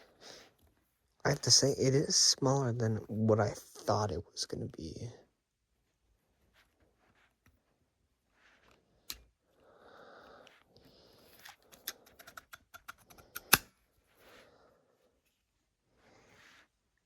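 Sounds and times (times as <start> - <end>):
rustling: 5.7 - 9.6
knife mechanism clicking: 11.8 - 13.7.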